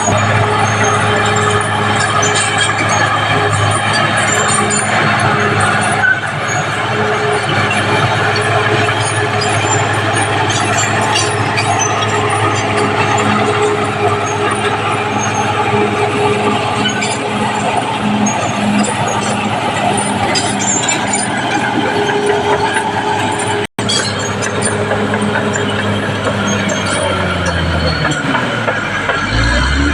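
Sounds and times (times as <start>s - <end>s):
bulldozer diesel engine running: 0.0s - 29.9s.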